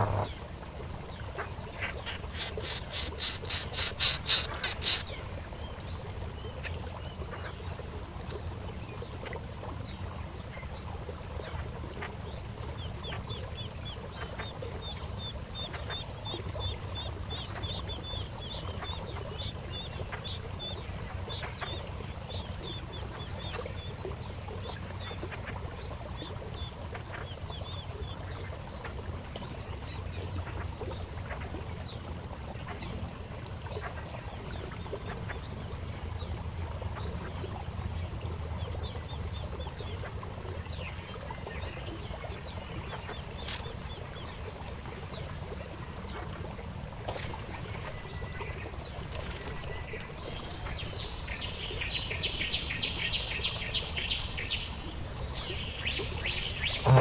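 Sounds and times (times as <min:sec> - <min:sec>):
high insect drone: 0:50.2 - 0:57.0
rapid high-pitched pulses: 0:56.6 - 0:57.0.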